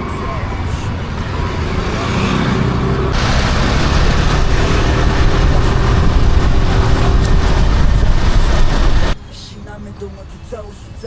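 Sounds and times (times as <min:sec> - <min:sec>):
motor vehicle rumbling: 0:00.0 - 0:11.0
road noise: 0:00.0 - 0:11.0.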